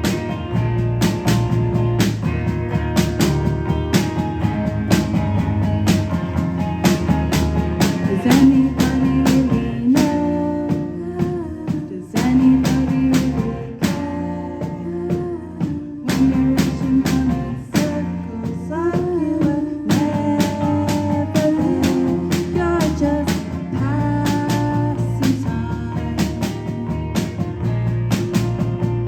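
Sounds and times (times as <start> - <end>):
electric guitar bending notes: 0.0 - 11.6
steady drum beat: 0.0 - 29.0.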